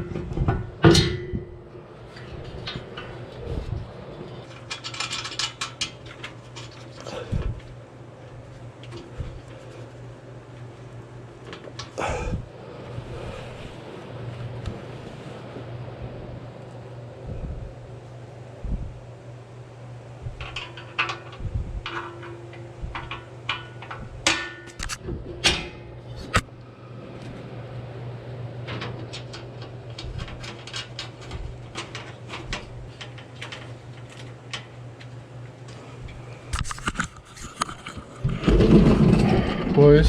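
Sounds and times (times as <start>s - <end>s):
steady low hum: 0.0s - 40.0s
tools clicking and clanking on metal: 4.4s - 7.2s, 20.4s - 26.4s, 28.7s - 35.1s.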